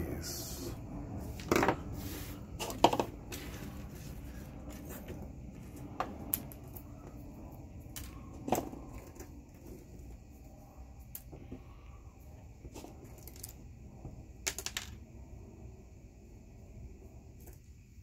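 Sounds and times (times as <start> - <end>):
low rumble: 0.0 - 18.0.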